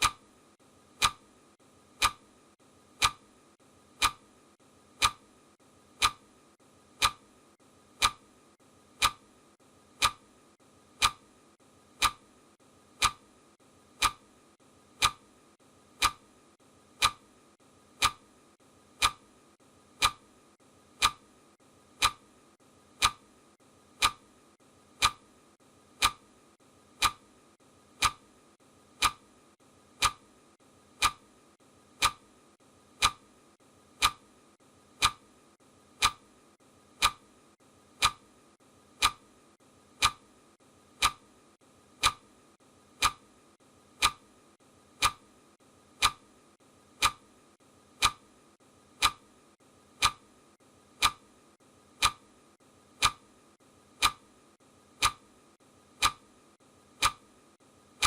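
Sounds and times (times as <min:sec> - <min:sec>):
clock ticking: 0:00.0 - 0:00.3, 0:00.9 - 0:06.3, 0:06.9 - 0:25.3, 0:25.9 - 0:26.3, 0:26.9 - 0:27.3, 0:27.9 - 0:28.3, 0:28.9 - 0:29.3, 0:29.9 - 0:30.3, 0:30.9 - 0:31.4, 0:32.0 - 0:32.3, 0:32.9 - 0:33.3, 0:34.0 - 0:34.3, 0:34.9 - 0:35.3, 0:35.9 - 0:36.3, 0:36.9 - 0:37.3, 0:37.9 - 0:38.3, 0:39.0 - 0:39.4, 0:40.0 - 0:40.3, 0:41.0 - 0:41.3, 0:41.9 - 0:42.4, 0:43.0 - 0:43.3, 0:44.0 - 0:44.4, 0:45.0 - 0:45.3, 0:46.0 - 0:46.4, 0:47.0 - 0:48.3, 0:49.0 - 0:49.4, 0:50.0 - 0:50.3, 0:50.9 - 0:52.4, 0:53.0 - 0:54.4, 0:55.0 - 0:56.4, 0:57.0 - 0:57.4.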